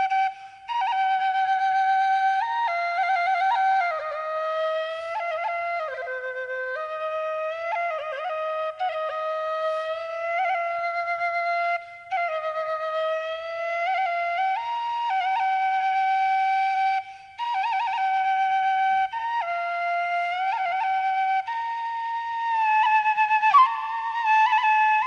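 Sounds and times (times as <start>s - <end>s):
bamboo flute melody: 0.0s - 25.0s.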